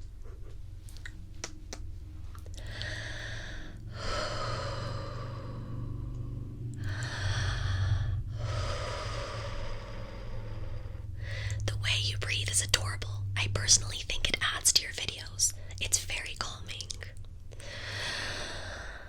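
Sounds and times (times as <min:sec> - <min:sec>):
slow deep breathing: 0:02.3 - 0:12.6, 0:17.5 - 0:19.0.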